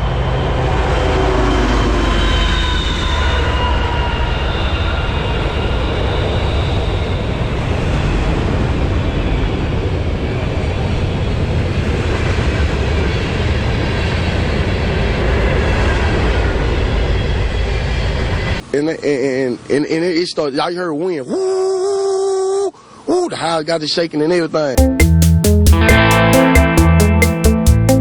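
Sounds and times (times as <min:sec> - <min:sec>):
tornado wind roaring: 0:00.0 - 0:18.6.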